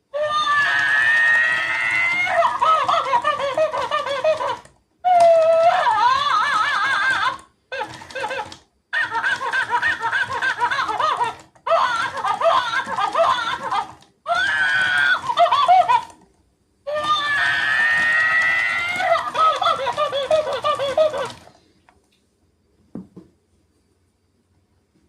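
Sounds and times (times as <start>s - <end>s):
toy giggling through speaker: 2.2s - 16.2s, 18.0s - 21.5s.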